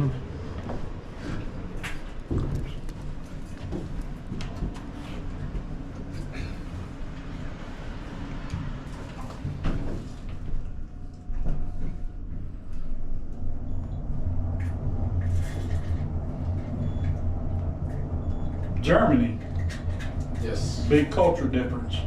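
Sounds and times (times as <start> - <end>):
elevator car low rumble: 0.0 - 22.0
brief elevator tone: 13.4 - 19.0.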